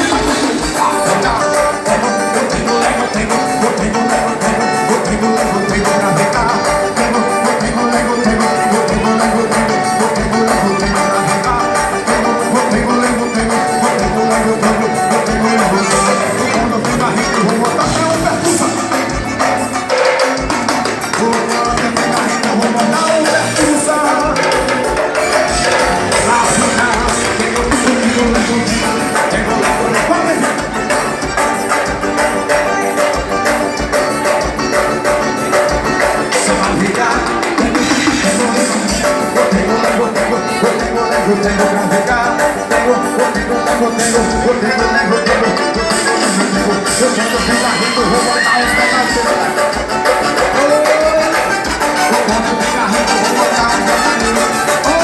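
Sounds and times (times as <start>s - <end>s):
drum beat and percussion: 0.0s - 55.0s
live band music: 0.0s - 55.0s
steady bass beat: 20.5s - 33.7s.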